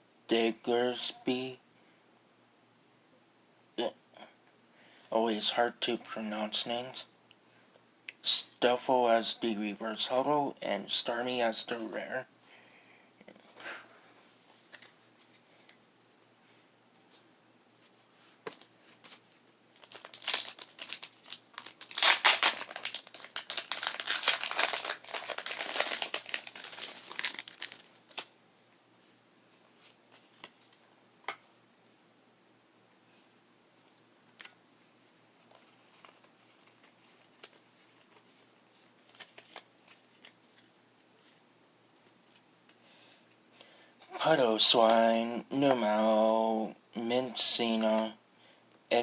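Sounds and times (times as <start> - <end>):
foil wrapper tearing and crinkling: 19.8 - 28.3.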